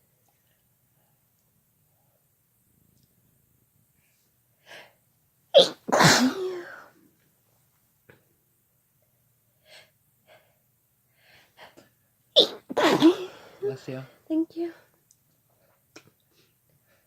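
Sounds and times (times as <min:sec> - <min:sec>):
person sneezing: 0:05.6 - 0:06.9, 0:12.4 - 0:13.6.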